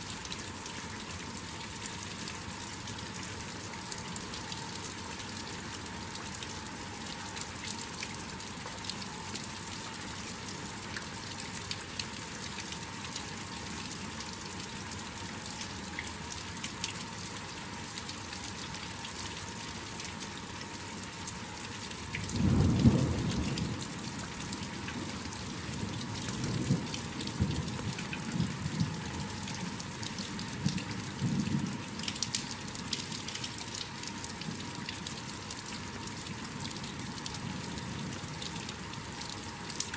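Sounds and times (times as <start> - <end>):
steady rain: 0.0 - 39.9
thunderclap and rolling thunder: 22.4 - 23.8
water drips: 38.1 - 39.9.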